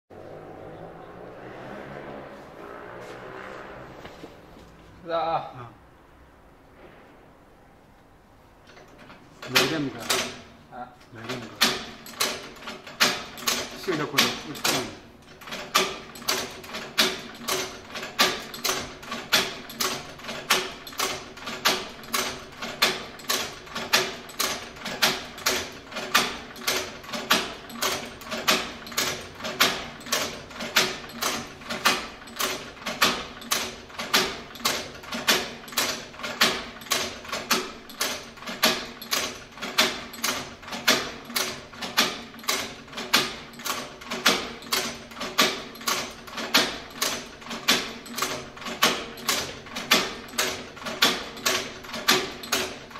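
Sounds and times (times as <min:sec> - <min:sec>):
sewing machine clacking: 0:08.7 - 0:52.9.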